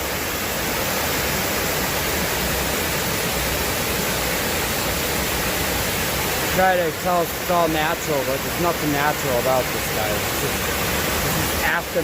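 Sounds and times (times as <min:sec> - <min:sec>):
flowing water rushing: 0:00.0 - 0:12.0.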